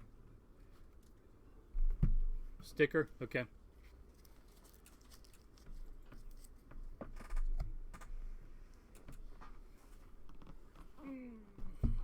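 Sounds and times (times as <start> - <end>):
cards and wrappers rustling: 4.1 - 6.6.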